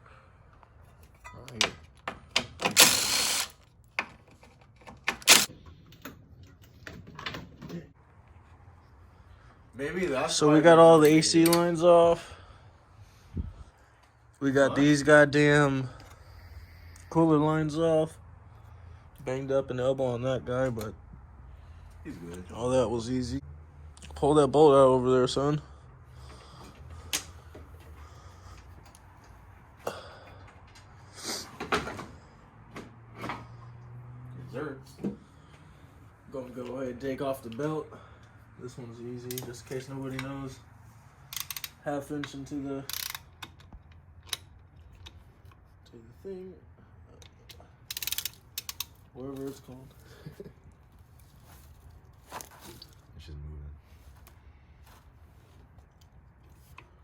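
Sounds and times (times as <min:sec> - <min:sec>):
tools clicking on metal: 0:01.0 - 0:06.6, 0:41.3 - 0:45.6, 0:47.2 - 0:49.1.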